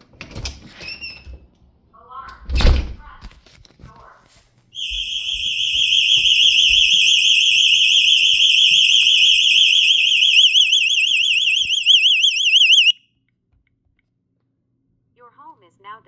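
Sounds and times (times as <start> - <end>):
alarm siren warbling: 4.8 - 13.0.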